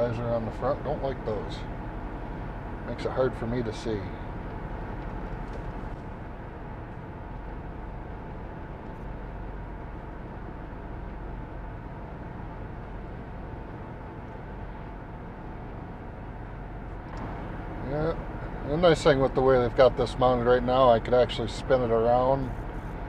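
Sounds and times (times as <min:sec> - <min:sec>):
vehicle road and engine rumble: 0:00.0 - 0:23.0.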